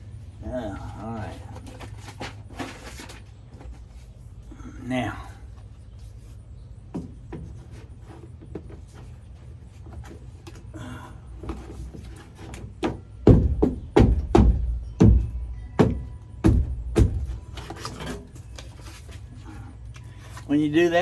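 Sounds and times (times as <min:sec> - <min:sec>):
knocks on van body: 0:12.7 - 0:17.5.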